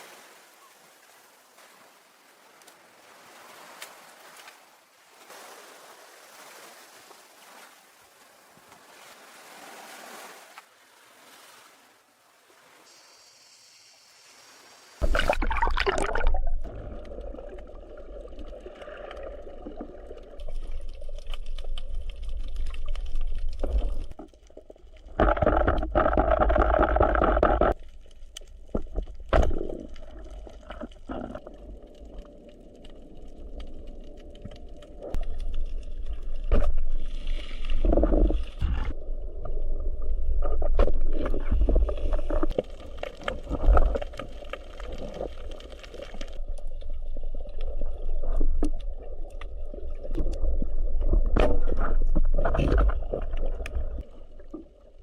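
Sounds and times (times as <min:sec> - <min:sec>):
water splashing and trickling: 0:00.0 - 0:13.0, 0:14.1 - 0:55.0
water sloshing: 0:15.0 - 0:39.6.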